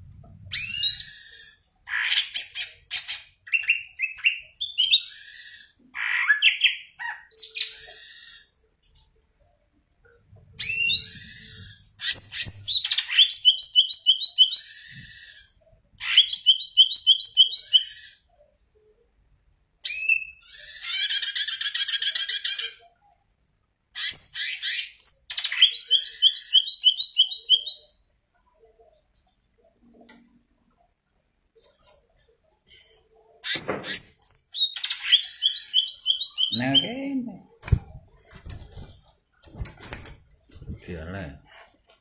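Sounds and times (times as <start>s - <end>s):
bird singing: 24.0s - 28.1s, 33.4s - 37.1s.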